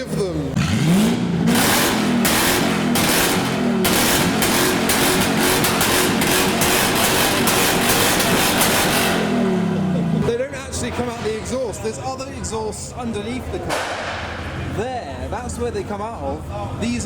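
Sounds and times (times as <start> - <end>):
car engine at high revs: 0.0 - 10.3
exhaust crackle: 0.5 - 10.4.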